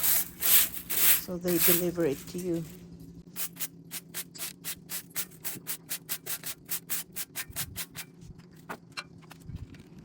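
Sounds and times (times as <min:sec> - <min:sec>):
scrubbing strokes on wicker basket: 0:00.0 - 0:02.8.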